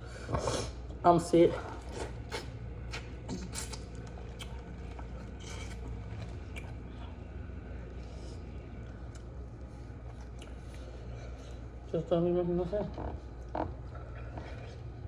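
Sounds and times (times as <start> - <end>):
low hum: 0.0 - 15.0
chewing food: 1.5 - 11.9, 12.8 - 15.0
small clicks and wet snaps: 2.3 - 6.9, 8.8 - 11.6.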